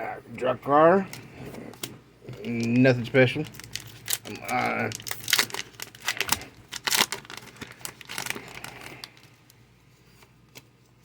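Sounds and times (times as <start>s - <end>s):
foil wrapper crinkling and tearing: 1.8s - 9.6s.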